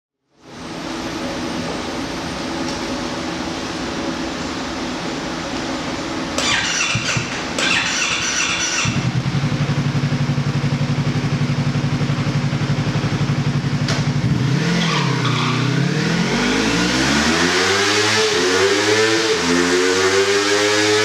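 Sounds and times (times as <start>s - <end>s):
motorcycle engine: 6.4s - 21.0s.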